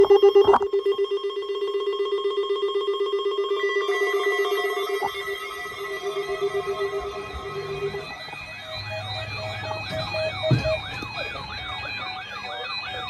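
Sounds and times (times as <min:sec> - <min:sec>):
pulsing ringing tone: 0:00.0 - 0:13.0
steady higher tones: 0:03.8 - 0:13.0.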